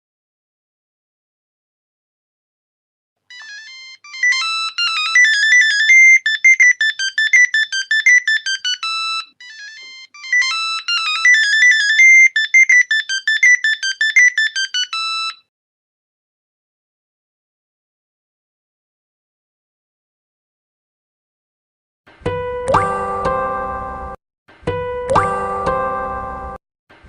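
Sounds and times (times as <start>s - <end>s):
polyphonic phone ringtone: 3.3s - 15.5s.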